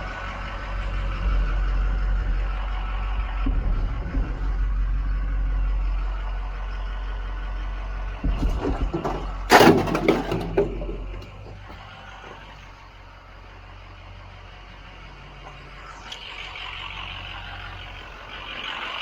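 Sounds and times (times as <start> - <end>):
vehicle engine rumbling: 0.0 - 19.0
loud clattering knocks: 0.7 - 12.7.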